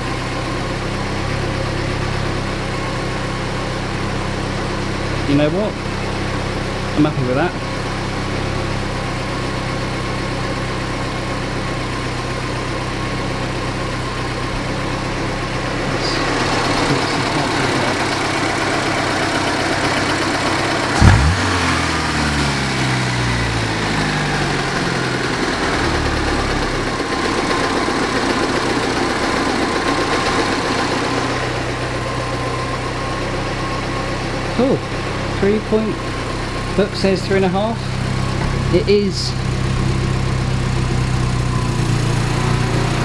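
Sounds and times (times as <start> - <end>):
car engine idling: 0.0 - 43.0
whirr winding down: 21.0 - 21.9.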